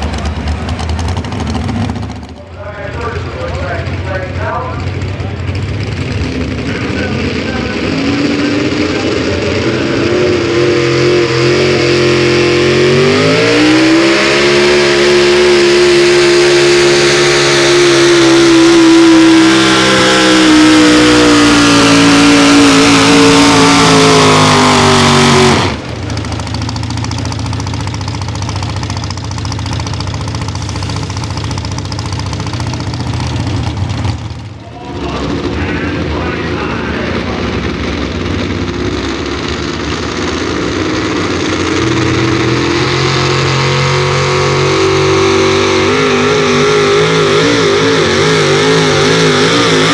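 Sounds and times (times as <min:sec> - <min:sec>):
engine at full throttle: 0:00.0 - 0:49.9.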